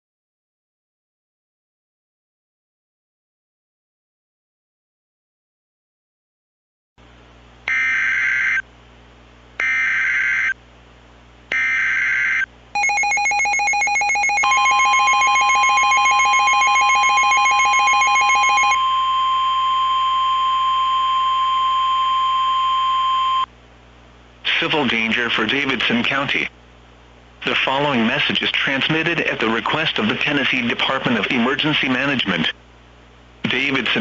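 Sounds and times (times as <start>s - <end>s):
steady single-pitch alarm tone: 7.7s - 8.6s, 9.6s - 10.6s, 11.5s - 23.5s
screechy digital data bursts: 11.6s - 18.8s
two-tone attention signal: 12.8s - 23.5s.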